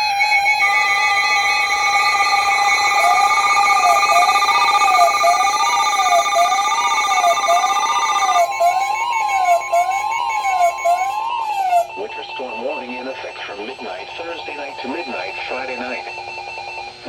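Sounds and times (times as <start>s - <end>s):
siren-like sweeping tone: 0.0s - 13.0s
steady alarm tone: 0.0s - 17.0s.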